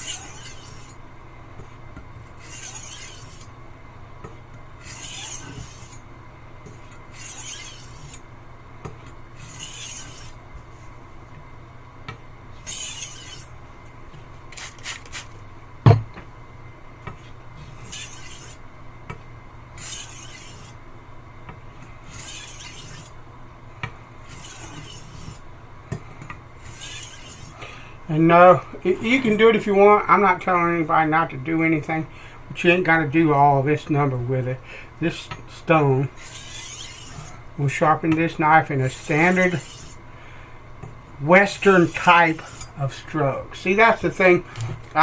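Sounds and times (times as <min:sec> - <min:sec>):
knife scraping on whetstone: 0:00.0 - 0:01.0, 0:02.4 - 0:03.5, 0:04.8 - 0:06.0, 0:07.1 - 0:08.2, 0:09.4 - 0:10.4, 0:12.6 - 0:13.6, 0:17.6 - 0:18.6, 0:19.8 - 0:20.8, 0:22.1 - 0:23.2, 0:24.2 - 0:25.4, 0:26.6 - 0:27.6, 0:36.2 - 0:37.3, 0:38.8 - 0:40.0, 0:41.5 - 0:42.7
sharp knock: 0:15.9 - 0:16.2.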